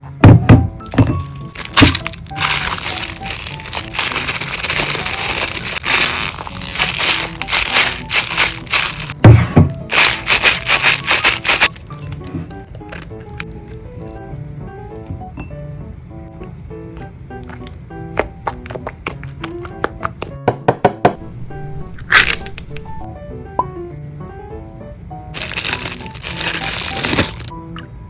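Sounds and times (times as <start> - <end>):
light background music: 0.0 - 28.0
slime crackling and popping: 0.9 - 9.2, 9.9 - 13.8, 25.4 - 27.5.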